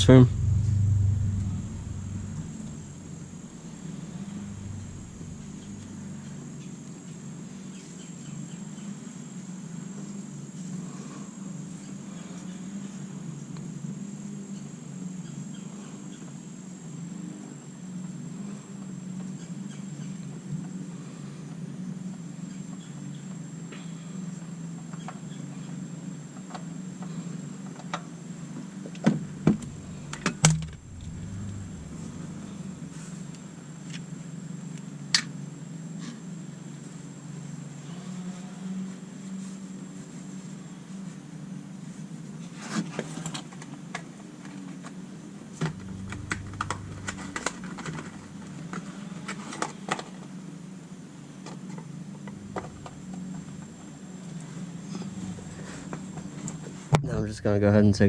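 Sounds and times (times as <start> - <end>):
steady low hum: 0.0 - 6.9, 29.0 - 35.0, 45.5 - 49.1, 51.8 - 57.7.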